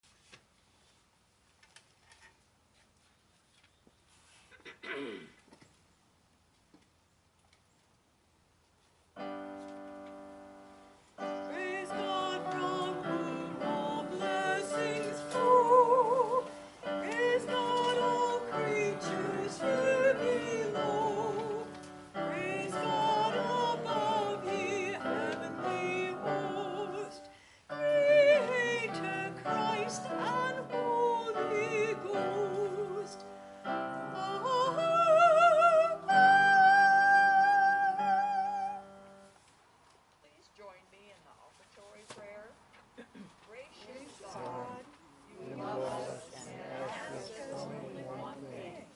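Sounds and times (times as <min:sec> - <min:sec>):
sustained keyboard chords: 0:09.2 - 0:36.6
person singing with vibrato: 0:11.2 - 0:39.3.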